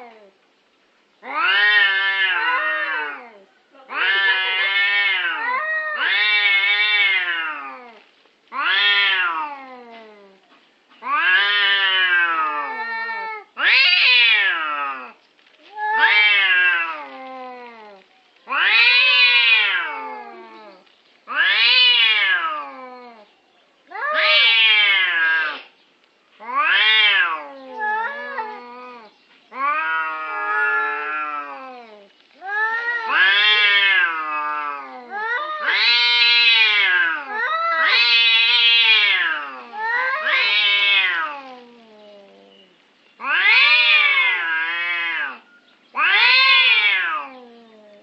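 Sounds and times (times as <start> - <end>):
cat meowing: 1.2 - 10.4, 11.0 - 23.3, 23.9 - 25.7, 26.4 - 48.0.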